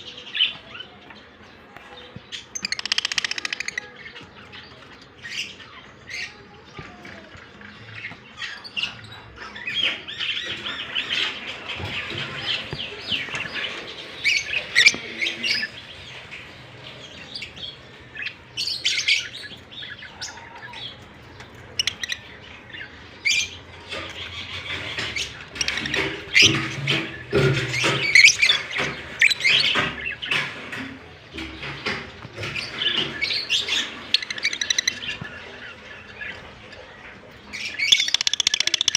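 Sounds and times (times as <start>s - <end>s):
lovebirds chirping: 0.0s - 38.9s.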